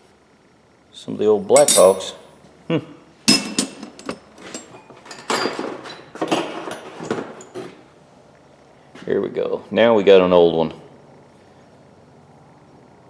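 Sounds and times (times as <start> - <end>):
wrenches and sockets clinking: 1.5 - 2.2, 3.3 - 7.6.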